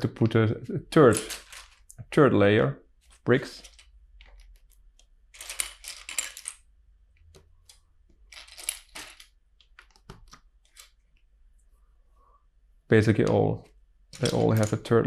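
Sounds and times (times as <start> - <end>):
plastic bricks clattering: 1.1 - 1.8, 5.3 - 6.6, 8.3 - 9.9.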